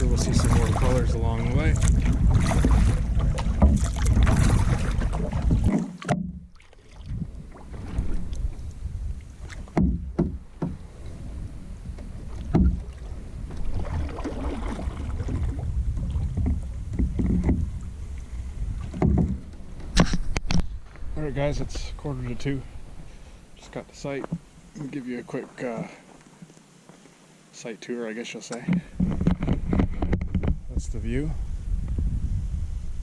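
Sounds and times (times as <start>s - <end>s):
paddle strokes in water: 0.0s - 20.4s
wind rumble on microphone: 0.0s - 23.1s, 28.9s - 33.0s
water against canoe hull: 0.0s - 27.3s, 28.4s - 31.2s
short knocks: 9.6s - 10.8s, 12.4s - 12.9s.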